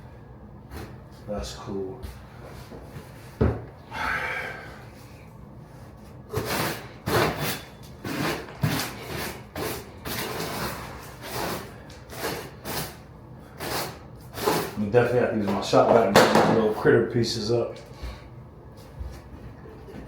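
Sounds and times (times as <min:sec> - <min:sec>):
hand saw rasping strokes: 0:06.3 - 0:14.8.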